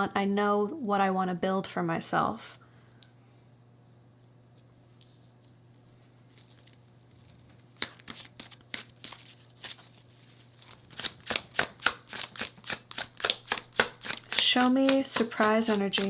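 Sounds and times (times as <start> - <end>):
cards shuffled by hand: 6.3 - 16.0.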